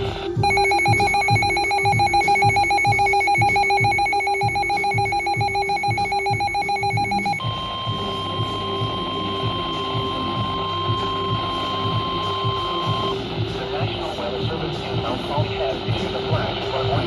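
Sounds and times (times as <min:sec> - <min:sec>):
rapidly pulsing electronic beeping: 0:00.0 - 0:17.0
steady alarm tone: 0:00.4 - 0:13.2.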